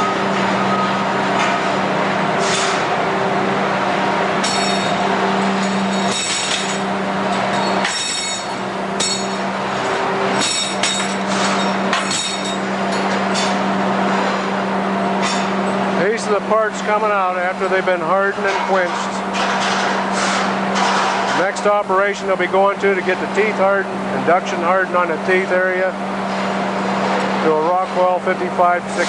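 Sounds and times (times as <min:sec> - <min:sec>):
conveyor machinery hum and roar: 0:00.0 - 0:29.0.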